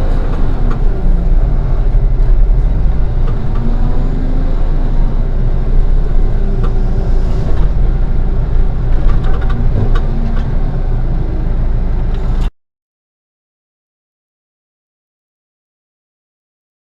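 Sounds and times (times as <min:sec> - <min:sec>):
diesel engine under load: 0:00.0 - 0:12.5
knocks and clanks: 0:06.2 - 0:10.7.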